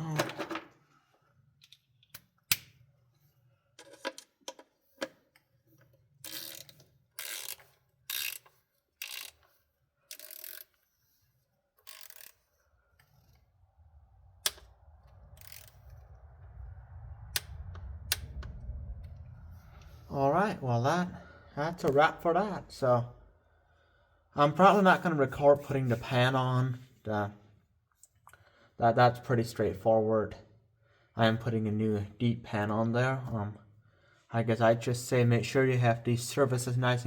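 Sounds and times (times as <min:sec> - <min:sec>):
hand ratchet clicking: 0:06.2 - 0:10.8, 0:11.8 - 0:13.4, 0:15.4 - 0:15.8
low rumble: 0:12.8 - 0:23.7.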